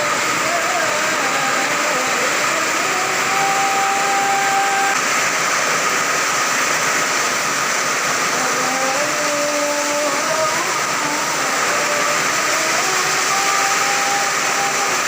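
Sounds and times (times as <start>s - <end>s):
heavy rain and wind: 0.0s - 15.0s.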